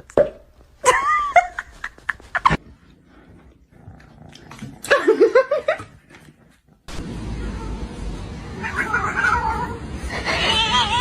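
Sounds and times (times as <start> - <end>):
cat yowling: 8.6 - 11.0.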